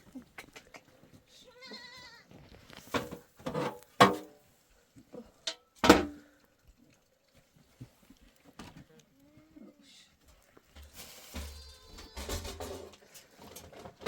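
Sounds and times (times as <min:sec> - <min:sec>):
goats bleating: 0:01.3 - 0:02.4, 0:11.4 - 0:12.4.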